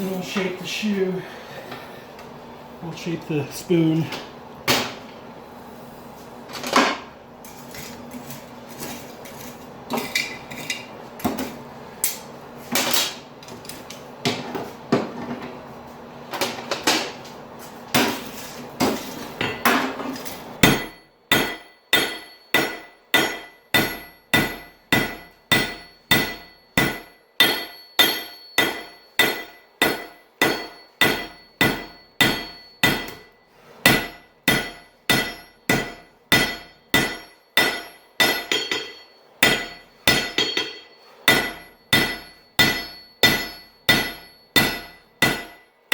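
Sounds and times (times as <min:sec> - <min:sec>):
anvil ringing: 0:20.6 - 0:45.7
hammer striking metal on anvil: 0:20.6 - 0:45.7.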